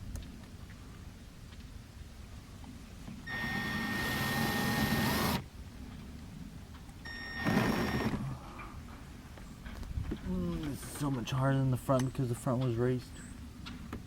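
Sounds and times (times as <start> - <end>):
cordless drill motor whining: 3.3 - 5.4, 7.1 - 8.3.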